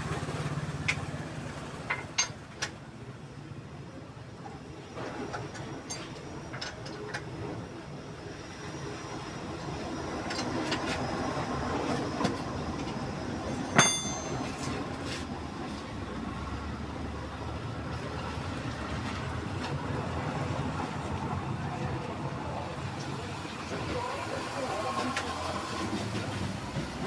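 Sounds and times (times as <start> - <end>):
sharp metallic clink: 13.6 - 14.8.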